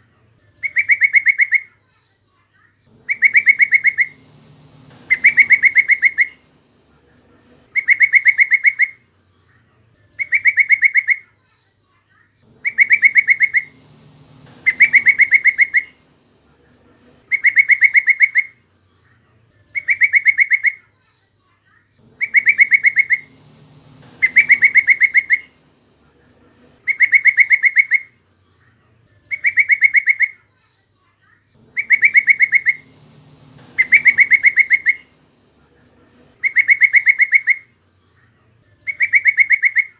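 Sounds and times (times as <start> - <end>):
bird chattering call: 0.6 - 1.7, 2.9 - 6.8, 7.4 - 9.0, 10.2 - 11.3, 12.5 - 18.6, 19.8 - 20.8, 22.0 - 28.2, 29.3 - 30.4, 31.6 - 37.8, 38.8 - 39.9.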